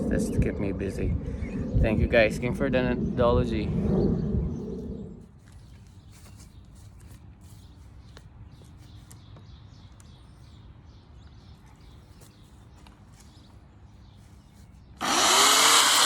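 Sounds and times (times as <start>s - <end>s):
low rumble: 0.0s - 5.3s.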